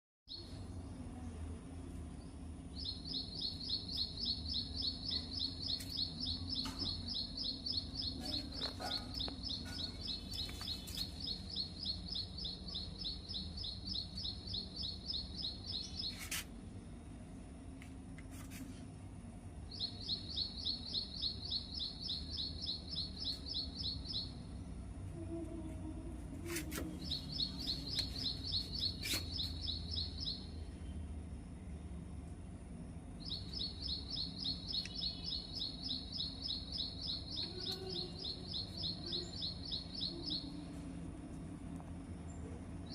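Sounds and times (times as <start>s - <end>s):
low steady hum: 0.3s - 42.9s
small bird chirping trills: 2.1s - 16.3s, 19.7s - 24.9s, 26.9s - 31.7s, 33.2s - 40.8s.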